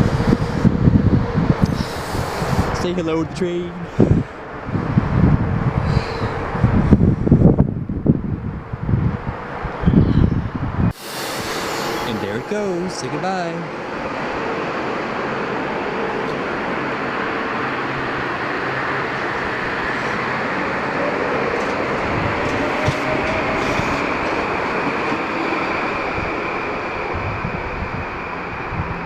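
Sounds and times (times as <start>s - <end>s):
electric train rumble: 0.0s - 29.0s
faint rising tone: 10.9s - 14.0s.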